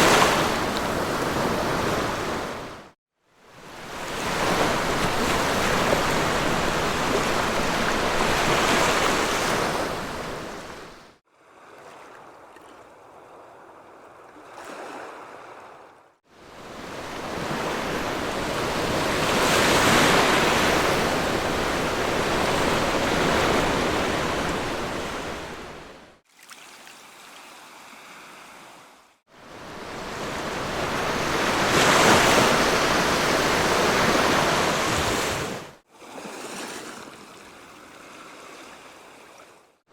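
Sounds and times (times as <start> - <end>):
sea waves breaking on beach: 0.0 - 12.4, 16.4 - 39.6
distant surf wash: 3.5 - 11.2, 16.4 - 26.2, 29.4 - 35.8.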